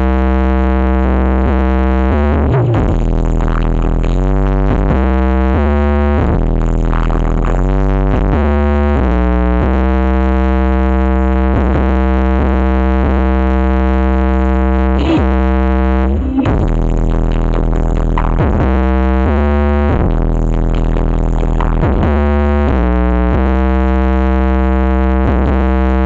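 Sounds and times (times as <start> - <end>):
electronic dance music: 1.4 - 8.5, 14.8 - 26.0.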